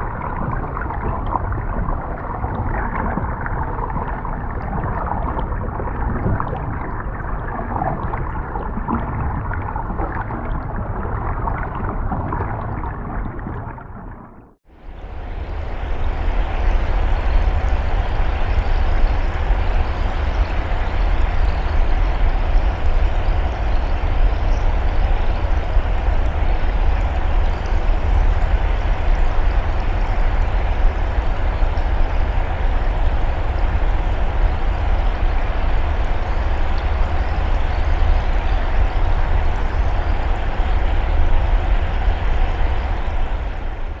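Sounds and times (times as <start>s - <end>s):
rushing water: 0.0s - 13.2s, 14.7s - 44.0s
deep rumble: 14.9s - 44.0s.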